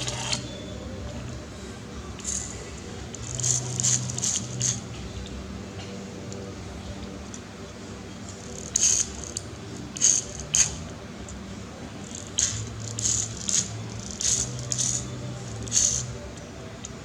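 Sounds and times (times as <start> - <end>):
toy car parts clicking: 3.1 - 4.8, 8.3 - 10.8, 12.0 - 16.2.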